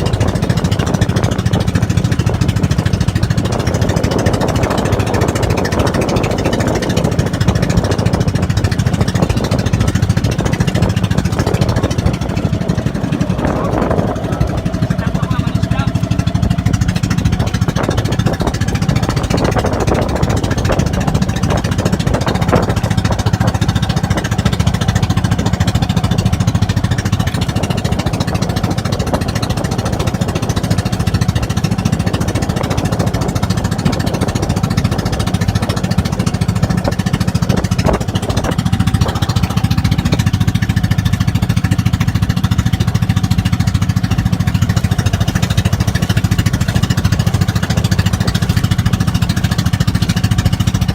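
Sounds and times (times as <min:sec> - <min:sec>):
boat engine chugging: 0:00.0 - 0:50.9.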